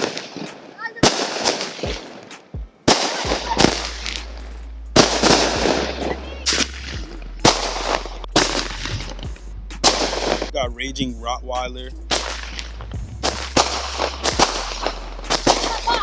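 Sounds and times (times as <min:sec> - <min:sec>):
firework bangs with crackle: 0:00.0 - 0:04.4, 0:05.0 - 0:10.5, 0:12.1 - 0:16.0.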